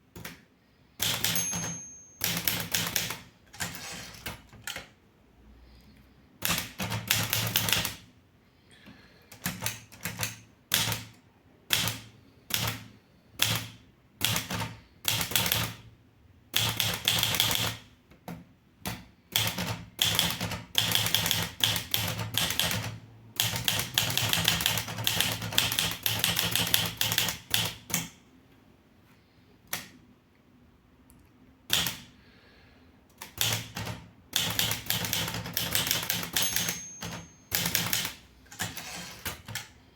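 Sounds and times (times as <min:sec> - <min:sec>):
manual typewriter key strikes: 0:01.0 - 0:04.8, 0:31.7 - 0:32.0, 0:33.2 - 0:39.7.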